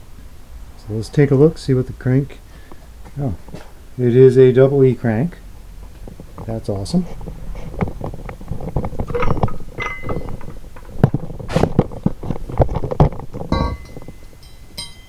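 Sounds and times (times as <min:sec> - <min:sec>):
metal clanks and clinks: 0:08.0 - 0:15.0
crankshaft ringing when struck: 0:09.1 - 0:10.5, 0:13.5 - 0:15.0.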